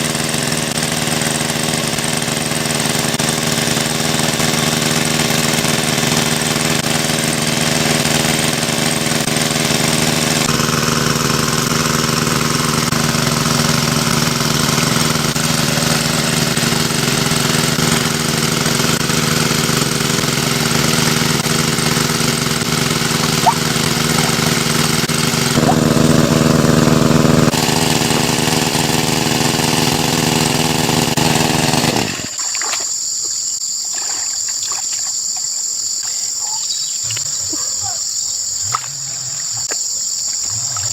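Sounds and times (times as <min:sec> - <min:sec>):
small engine water pump running: 0:00.0 - 0:37.4
crickets droning: 0:31.9 - 0:40.9.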